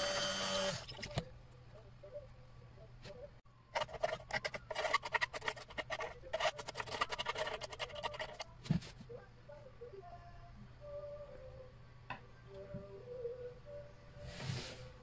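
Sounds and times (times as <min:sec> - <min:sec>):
rapid scraping strokes: 0:03.8 - 0:08.5.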